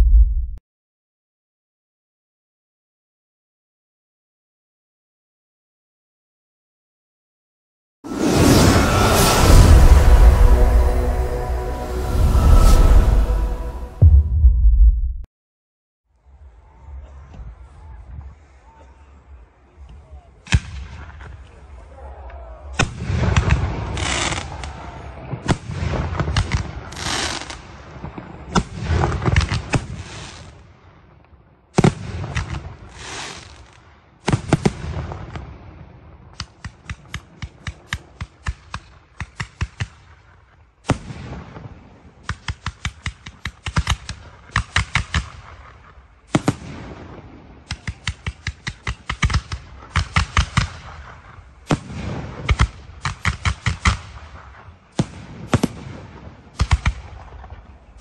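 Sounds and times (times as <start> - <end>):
fireworks booming: 0.0 - 0.6, 8.1 - 15.3
rapid sharp firework bangs: 36.3 - 40.2, 40.8 - 57.6.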